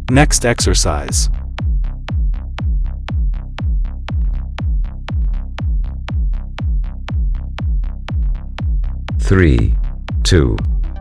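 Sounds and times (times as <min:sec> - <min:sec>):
electronic dance music: 0:00.0 - 0:01.3.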